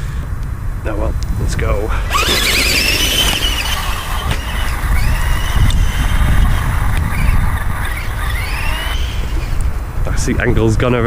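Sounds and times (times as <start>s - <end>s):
wind on microphone: 1.3s - 11.0s
electric motor whining: 2.0s - 10.2s.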